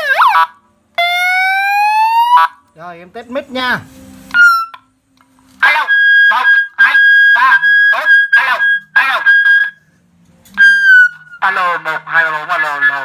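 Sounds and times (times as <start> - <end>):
electronic police siren: 0.0 - 2.6, 4.3 - 4.9, 5.6 - 9.9, 10.6 - 13.0.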